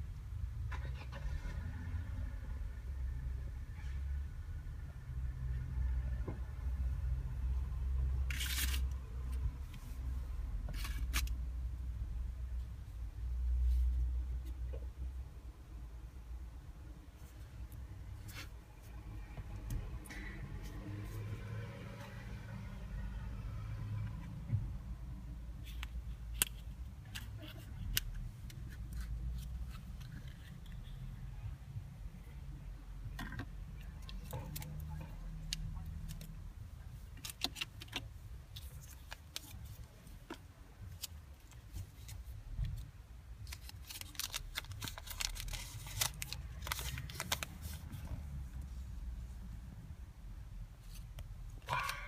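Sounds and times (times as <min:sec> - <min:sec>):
foil and plastic crinkling clicks: 0:43.4 - 0:47.7
wrapper rustling: 0:43.4 - 0:48.0.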